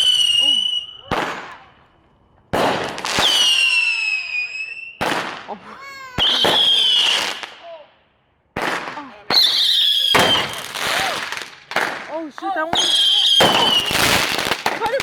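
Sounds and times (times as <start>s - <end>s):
high firework whistle: 0.0s - 1.6s, 3.1s - 5.2s, 6.2s - 7.5s, 9.3s - 11.4s, 12.8s - 14.6s
firework bangs: 0.0s - 1.8s, 2.5s - 7.7s, 8.5s - 15.0s.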